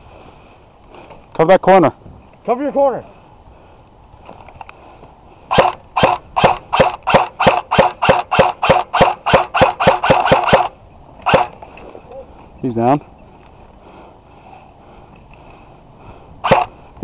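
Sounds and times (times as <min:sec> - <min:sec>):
airsoft rifle shots: 0:05.5 - 0:11.6, 0:16.4 - 0:16.7.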